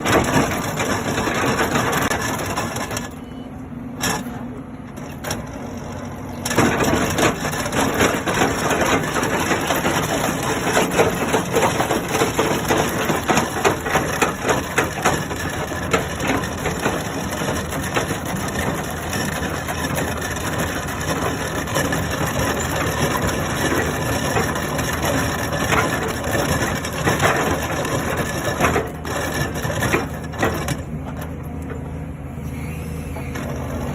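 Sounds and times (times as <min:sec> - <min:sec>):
machine hum: 0:31.1 - 0:33.9.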